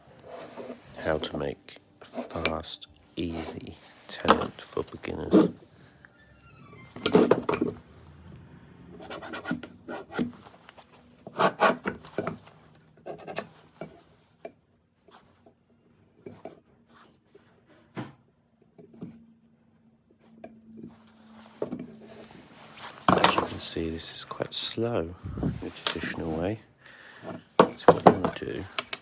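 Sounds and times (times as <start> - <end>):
hand tools scraping wood: 0.0 - 5.7, 9.0 - 14.5, 20.8 - 24.5, 27.1 - 29.0.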